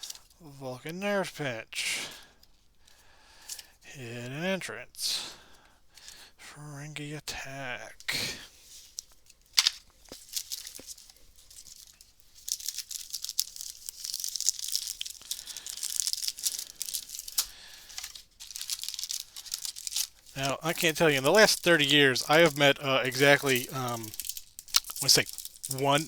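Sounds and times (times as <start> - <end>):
foil wrapper crinkling and tearing: 8.6 - 26.0.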